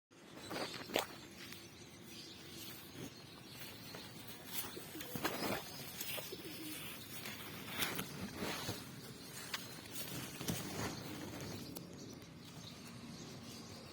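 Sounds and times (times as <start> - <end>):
dove cooing: 4.7 - 8.0.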